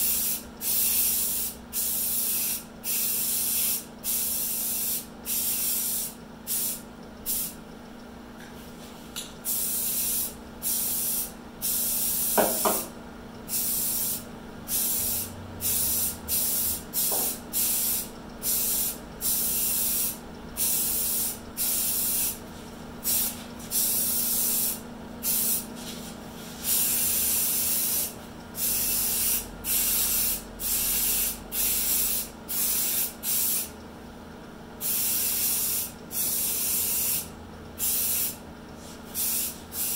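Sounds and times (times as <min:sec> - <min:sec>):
steady low hum: 0:00.0 - 0:39.9
spray gun hissing: 0:09.5 - 0:12.8, 0:13.5 - 0:22.4, 0:23.0 - 0:25.7, 0:26.6 - 0:33.7, 0:39.1 - 0:39.9.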